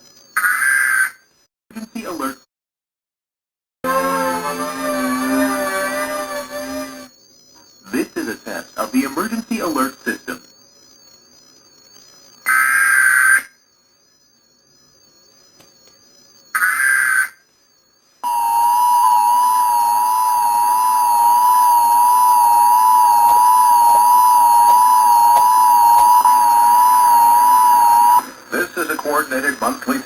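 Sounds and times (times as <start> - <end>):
two-tone attention signal: 3.9 - 10.0, 18.2 - 30.0
digital data tone bursts: 3.9 - 30.0.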